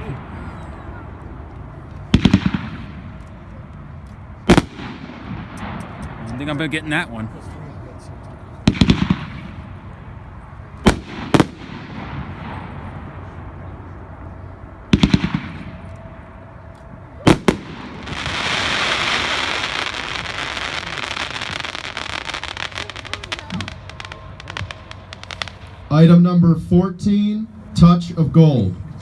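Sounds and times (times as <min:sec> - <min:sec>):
firework shells bursting: 0:04.5 - 0:06.3, 0:10.8 - 0:12.5, 0:17.3 - 0:25.9
firework crackle: 0:04.5 - 0:06.5, 0:10.8 - 0:12.9, 0:17.2 - 0:26.0.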